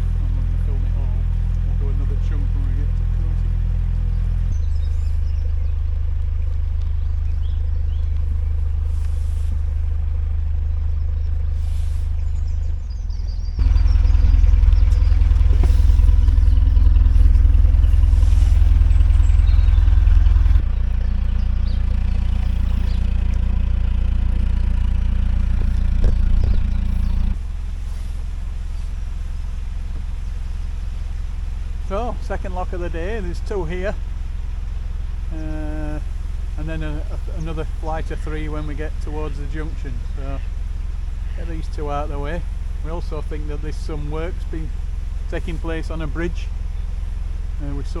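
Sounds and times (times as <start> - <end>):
diesel engine rumbling: 0.0 - 48.0.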